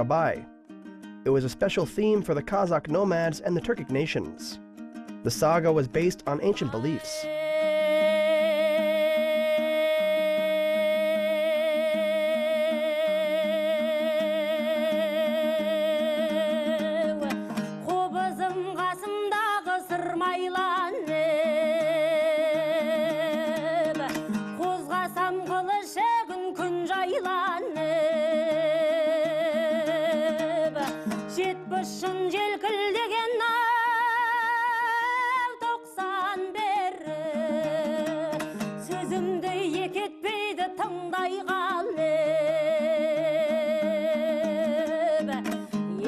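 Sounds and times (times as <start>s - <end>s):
string accompaniment: 0.0s - 9.8s
woman singing folk song: 3.0s - 46.0s.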